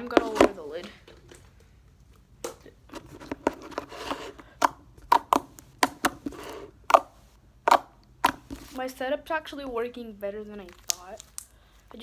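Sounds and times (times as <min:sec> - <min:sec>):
slime squishing: 0:03.7 - 0:08.8, 0:10.6 - 0:11.6
slime popping and clicking: 0:07.7 - 0:08.4.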